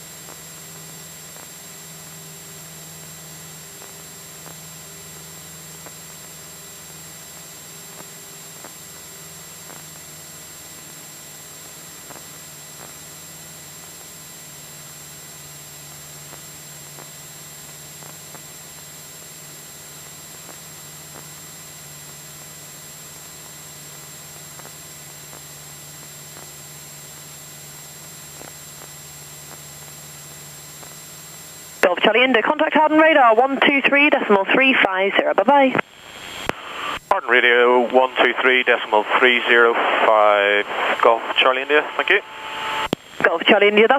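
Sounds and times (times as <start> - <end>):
faint ticks: 9.6 - 10.1, 24.5 - 26.5
airplane engine and propeller: 37.0 - 43.9.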